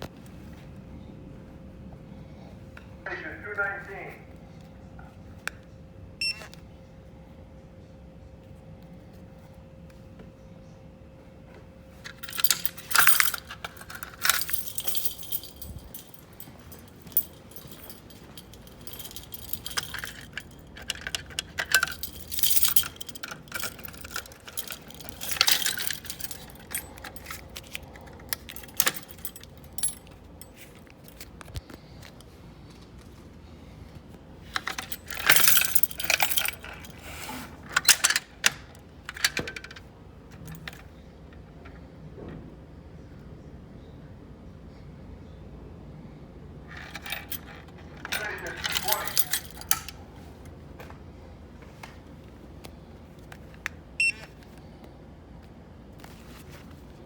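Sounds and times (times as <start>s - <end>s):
small metal pieces jingling: 12.1s - 31.2s, 34.6s - 37.0s, 46.9s - 49.9s.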